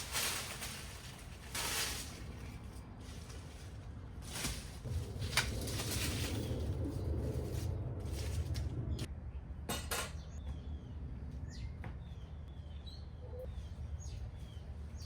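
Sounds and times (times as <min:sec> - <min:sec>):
low steady rumble: 0:00.0 - 0:09.6.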